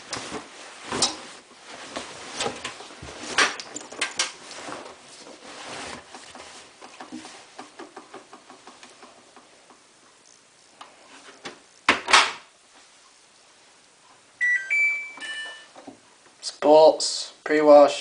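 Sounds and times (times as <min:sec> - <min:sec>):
sleeping bag rustling: 0:00.0 - 0:03.4, 0:04.4 - 0:06.8
control panel beeps: 0:14.4 - 0:15.7.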